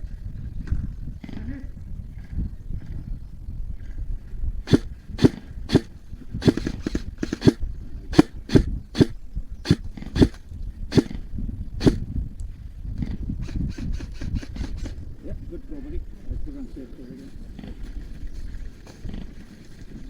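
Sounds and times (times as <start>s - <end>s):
low wind rumble: 0.0s - 20.0s
airsoft gun shots: 4.7s - 7.6s, 8.2s - 11.2s, 11.8s - 12.0s.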